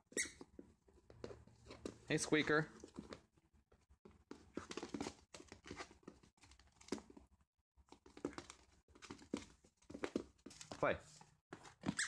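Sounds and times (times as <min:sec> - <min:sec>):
puppies scuffling and crinkling: 0:04.3 - 0:07.2.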